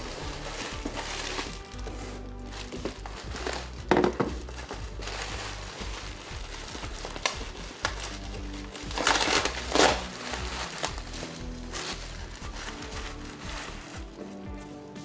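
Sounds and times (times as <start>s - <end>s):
packaging crinkling: 0.0s - 14.4s
background music: 0.0s - 15.0s.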